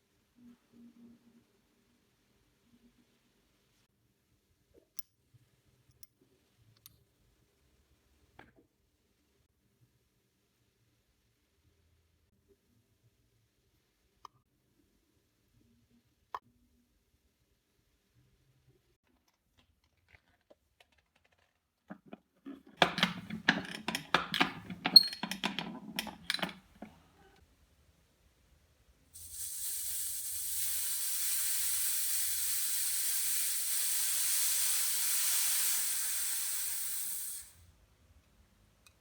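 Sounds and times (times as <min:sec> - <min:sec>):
clattering knocks and rattles: 0:21.4 - 0:27.0
pressurised jet hissing: 0:29.2 - 0:37.6.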